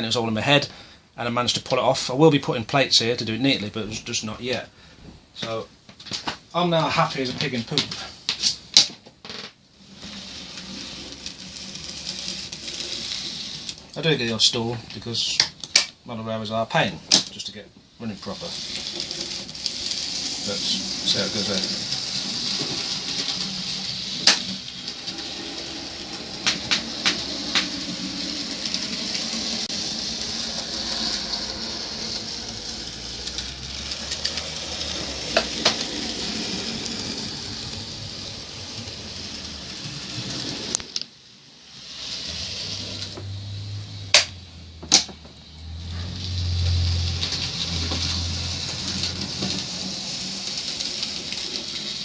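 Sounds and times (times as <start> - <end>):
model train hum: 9.8 - 14.4, 18.0 - 52.0
sharp clicks of model train: 26.4 - 27.8, 46.6 - 52.0.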